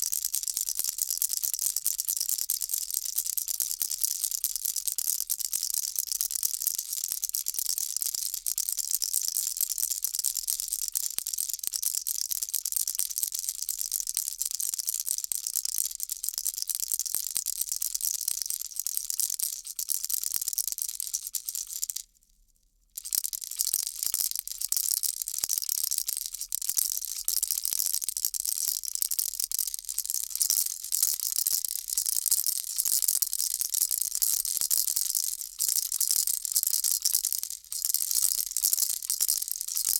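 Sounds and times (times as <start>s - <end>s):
baby rattle shaken: 23.0s - 39.9s.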